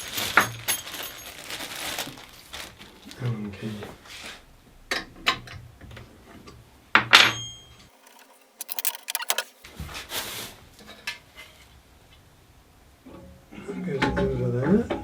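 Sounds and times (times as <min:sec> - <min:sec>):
small metal parts rattling: 0:07.9 - 0:09.6
metal scrape: 0:08.0 - 0:09.6.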